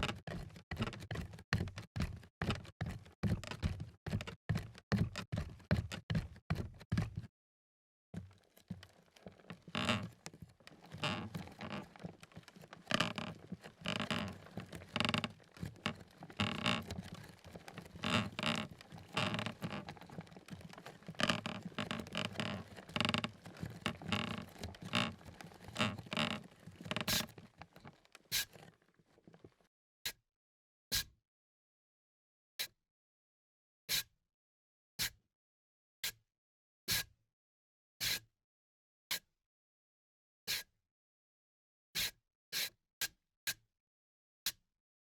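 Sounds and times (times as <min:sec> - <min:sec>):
barefoot footsteps: 0:08.2 - 0:29.6
floorboards creaking: 0:08.2 - 0:29.6.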